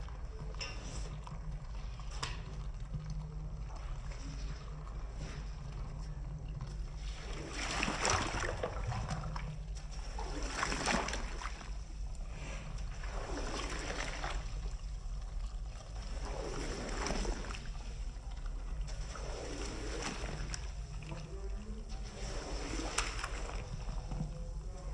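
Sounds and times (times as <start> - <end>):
steady low hum: 0.0 - 24.9
wet swishing strokes on rug: 22.0 - 23.9.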